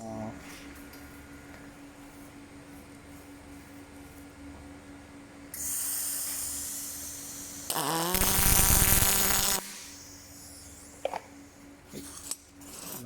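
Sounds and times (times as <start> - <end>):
welding arc buzzing: 5.6 - 9.8
welding hiss: 5.6 - 10.3.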